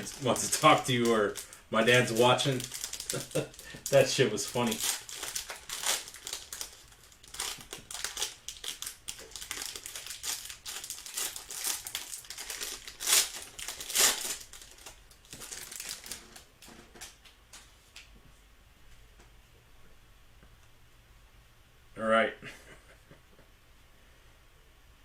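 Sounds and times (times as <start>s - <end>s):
card pack wrapper crinkling: 0.0s - 17.2s.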